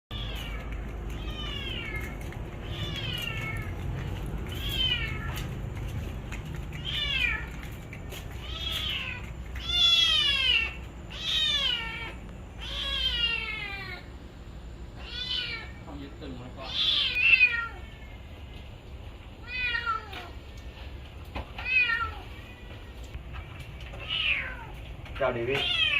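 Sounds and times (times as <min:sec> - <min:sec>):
cat meowing in pain: 0:00.1 - 0:03.9, 0:16.6 - 0:17.9.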